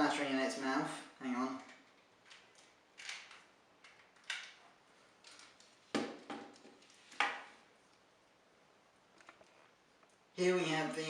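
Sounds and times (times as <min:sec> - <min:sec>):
plastic toy clicks and knocks: 0:02.3 - 0:04.6.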